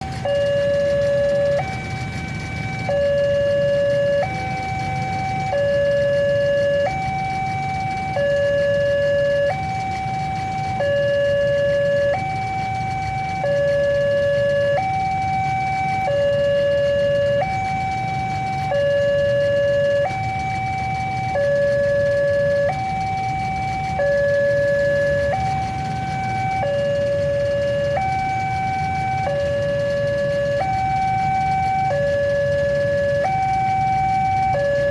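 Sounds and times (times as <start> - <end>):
two-tone crossing warning siren: 0.0 - 34.9.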